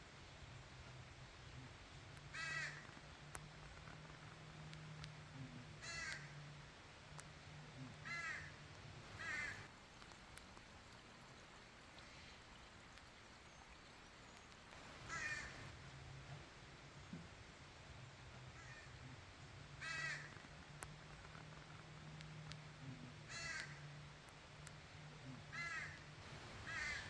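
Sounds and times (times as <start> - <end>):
bird cawing: 2.4 - 2.8, 5.8 - 6.3, 8.0 - 8.5, 9.1 - 15.7, 19.8 - 20.3, 23.3 - 23.8, 25.6 - 27.0
faint low hum: 3.2 - 17.4, 24.5 - 27.0.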